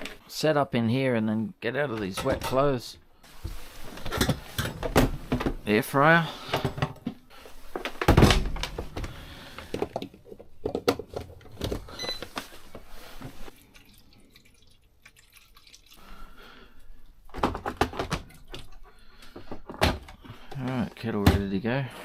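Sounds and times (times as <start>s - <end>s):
water dripping: 13.5s - 16.4s.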